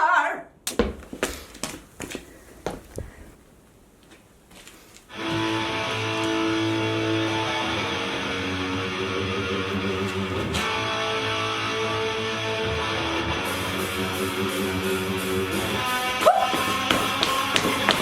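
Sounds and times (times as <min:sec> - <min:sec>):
rock music with electric guitar: 0:05.1 - 0:18.0.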